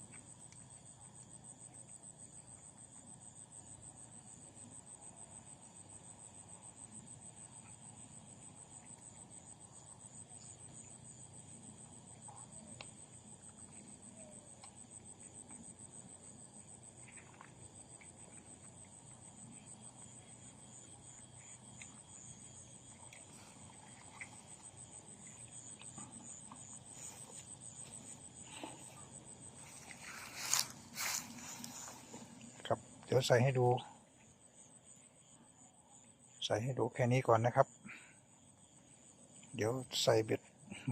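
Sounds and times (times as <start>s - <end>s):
insects trilling: 0.0s - 40.9s
rustle: 6.4s - 33.8s.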